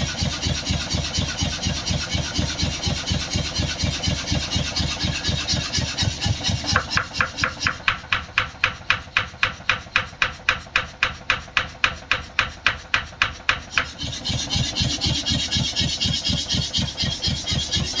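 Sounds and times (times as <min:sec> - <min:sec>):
mechanical forging hammer blows: 0:04.7 - 0:18.0.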